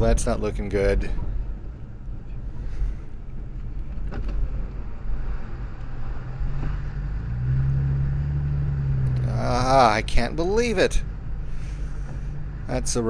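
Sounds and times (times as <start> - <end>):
car engine rumble: 0.0 - 13.0
road noise: 0.0 - 13.0.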